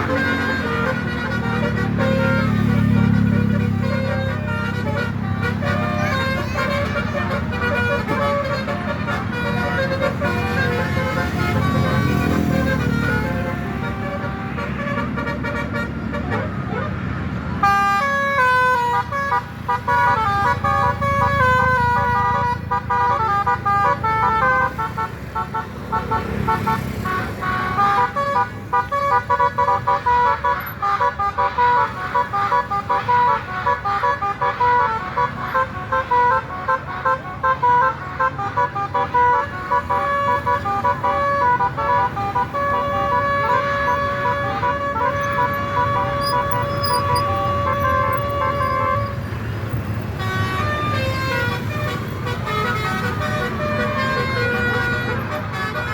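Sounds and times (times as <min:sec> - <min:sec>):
multi-tone bus air horn melody: 0:00.0 - 0:55.9
engine rumble: 0:39.1 - 0:55.9.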